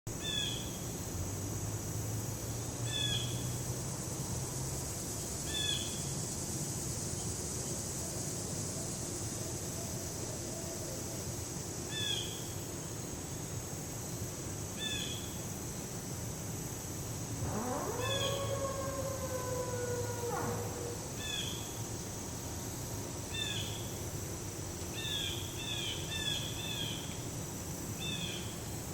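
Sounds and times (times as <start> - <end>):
insects droning: 0.1 - 28.9
high insect trilling: 14.7 - 28.9
animal call falling in pitch: 17.4 - 21.7.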